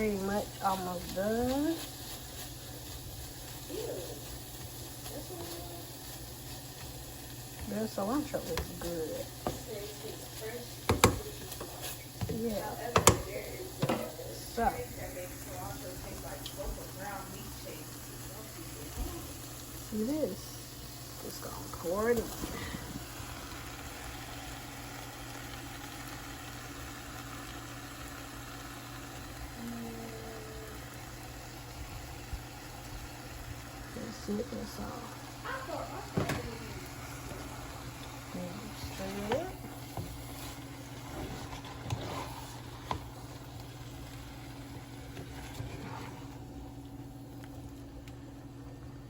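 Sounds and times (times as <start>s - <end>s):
stir fry hissing: 0.0s - 47.4s
low mechanical hum: 0.0s - 49.0s
sharp knocks against pan: 10.9s - 11.2s, 12.9s - 14.0s
steady low hum: 28.1s - 49.0s.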